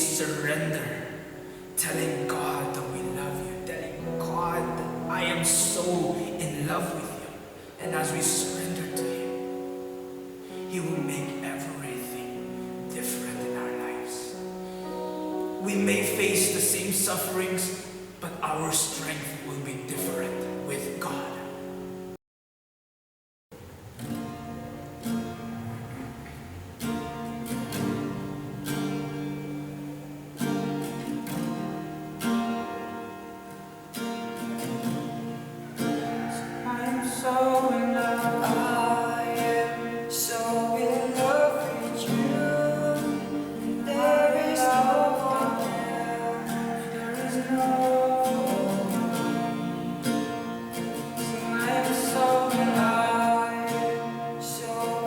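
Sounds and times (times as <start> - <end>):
strummed acoustic guitar: 0.0 - 22.2, 23.6 - 55.0
person singing: 1.8 - 9.4, 10.6 - 21.6, 35.8 - 55.0.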